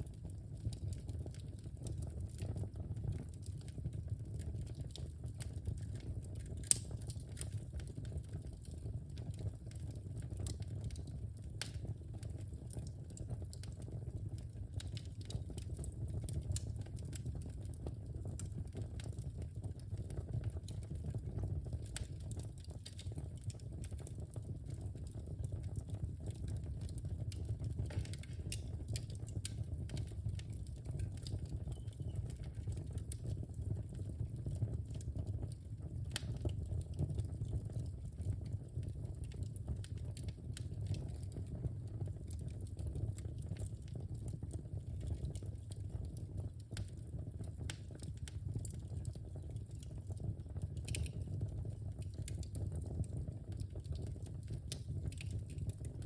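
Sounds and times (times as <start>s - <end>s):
fire crackling and popping: 0.0s - 56.0s
low rumble of flames: 0.0s - 56.0s
sharp fire snap: 6.6s - 7.0s, 27.8s - 32.6s.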